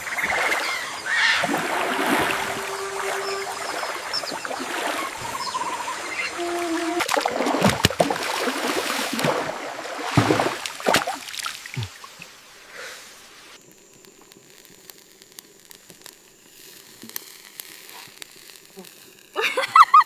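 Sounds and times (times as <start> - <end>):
water sloshing and splashing: 0.0 - 12.4.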